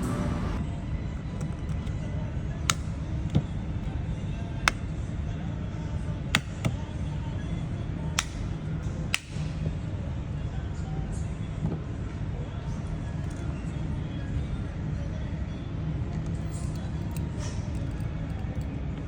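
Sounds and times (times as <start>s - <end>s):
steady low hum: 0.0s - 1.4s
plastic car key clicks: 6.3s - 6.8s, 8.2s - 8.4s.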